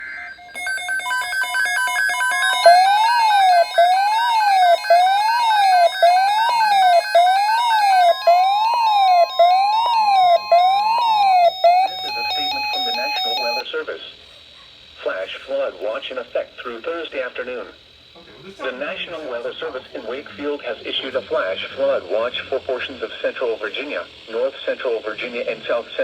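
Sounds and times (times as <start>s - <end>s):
rapid electronic beeps: 0.0s - 13.6s
siren-like alert tone: 0.0s - 13.6s.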